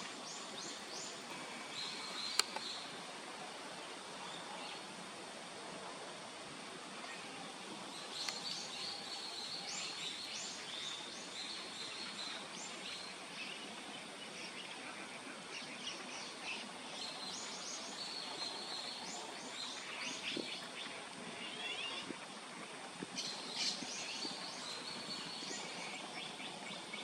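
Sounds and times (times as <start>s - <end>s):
small birds chirping: 0.0s - 2.9s, 7.9s - 14.7s, 23.2s - 27.0s
outdoor background hiss: 0.0s - 27.0s.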